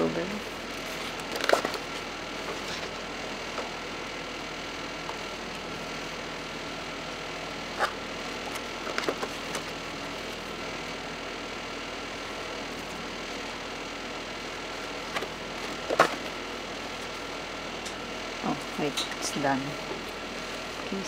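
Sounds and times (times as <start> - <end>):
steady background hum: 0.0 - 21.0
calendar pages being handled: 0.8 - 3.0, 8.5 - 10.4, 14.8 - 16.3.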